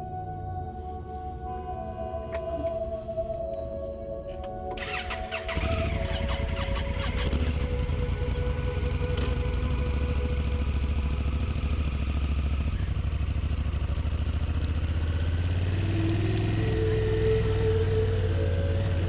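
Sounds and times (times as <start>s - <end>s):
background music: 0.0s - 19.0s
motorcycle engine running: 4.8s - 19.0s.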